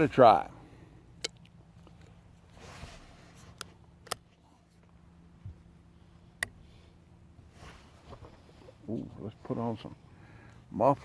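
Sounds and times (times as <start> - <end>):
sharp pistol clicks: 1.2 - 1.6
soft rustle: 1.8 - 10.0.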